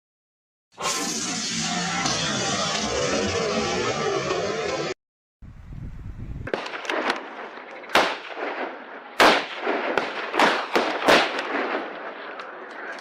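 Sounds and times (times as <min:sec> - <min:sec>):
gunshots: 0:06.5 - 0:13.0.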